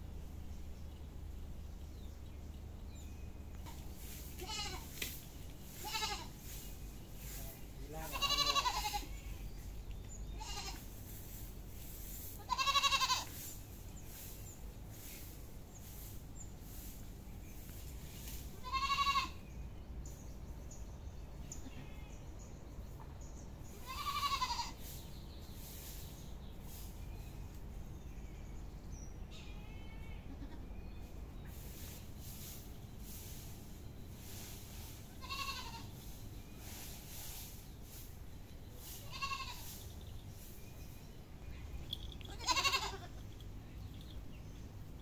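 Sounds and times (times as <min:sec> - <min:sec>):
goat bleating: 0:04.4 - 0:04.9, 0:05.8 - 0:06.4, 0:08.0 - 0:09.4, 0:10.4 - 0:10.8, 0:12.4 - 0:13.3, 0:18.6 - 0:19.4, 0:23.8 - 0:24.8, 0:29.4 - 0:30.8, 0:35.2 - 0:35.9, 0:39.0 - 0:39.7, 0:42.0 - 0:43.4.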